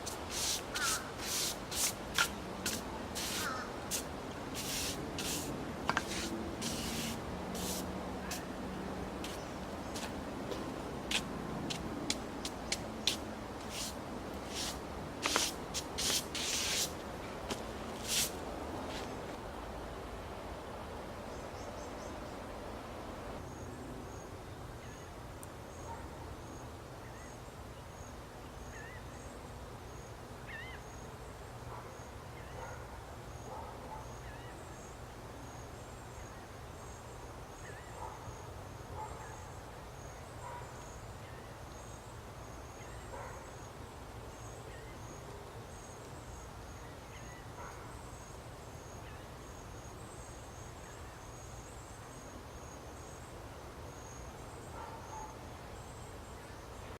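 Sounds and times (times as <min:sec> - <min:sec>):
birds calling: 0:00.0 - 0:01.5, 0:02.2 - 0:04.0
high thin chirp: 0:00.0 - 0:08.5, 0:13.1 - 0:16.9.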